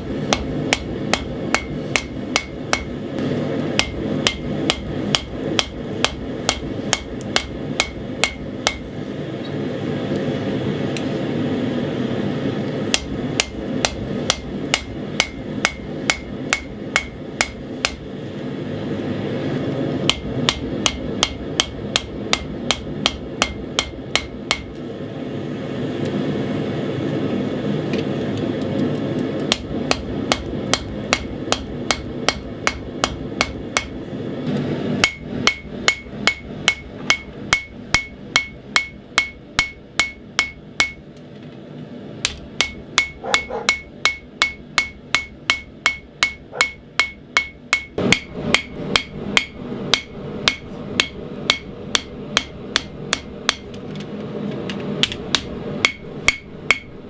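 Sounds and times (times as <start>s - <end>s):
hammer blows on anvil: 0.3s - 3.0s, 3.8s - 8.9s, 12.9s - 18.1s, 20.1s - 24.7s, 29.5s - 34.0s, 35.0s - 41.0s, 42.3s - 53.7s, 55.3s - 57.0s.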